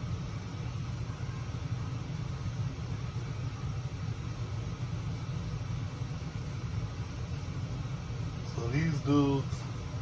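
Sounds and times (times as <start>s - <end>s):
low background rumble: 0.0s - 10.0s.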